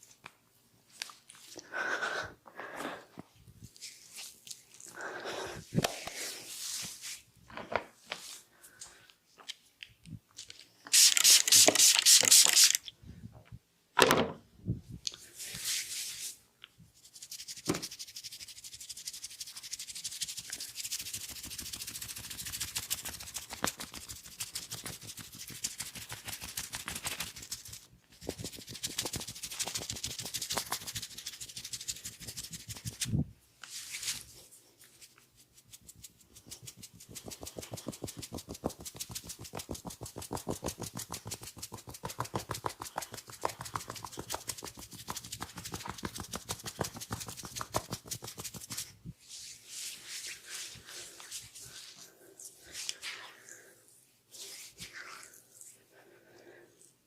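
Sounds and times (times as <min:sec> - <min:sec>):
hands rubbing oiled hair: 0:03.6 - 0:07.3, 0:10.9 - 0:12.8, 0:15.3 - 0:16.4, 0:17.0 - 0:55.8.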